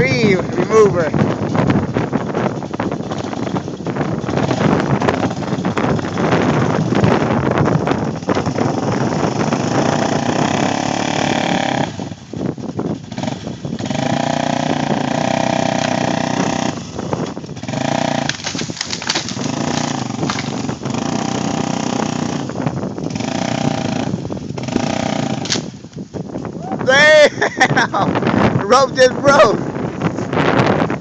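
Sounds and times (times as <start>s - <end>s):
vehicle engine revving hard: 2.6s - 25.8s.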